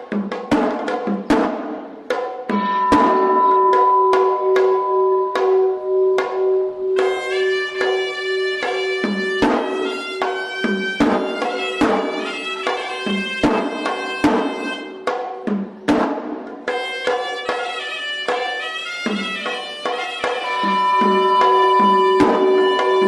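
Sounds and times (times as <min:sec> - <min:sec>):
ritual drumming: 0:00.0 - 0:23.0
temple bell ringing: 0:02.5 - 0:14.9, 0:20.3 - 0:23.0
reed horn wavering melody: 0:02.6 - 0:15.0, 0:17.1 - 0:23.0.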